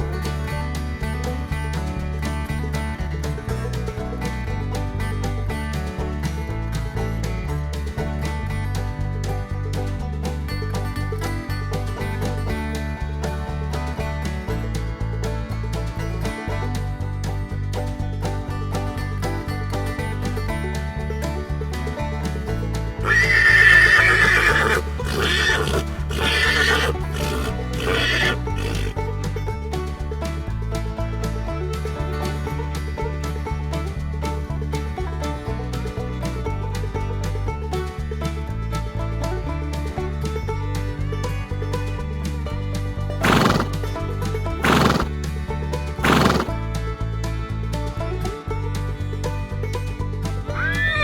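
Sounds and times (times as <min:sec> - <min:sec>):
background music: 0:00.0 - 0:51.0
horse whinnying: 0:23.0 - 0:29.0, 0:43.2 - 0:43.7, 0:44.6 - 0:45.1, 0:46.0 - 0:46.5, 0:50.6 - 0:51.0.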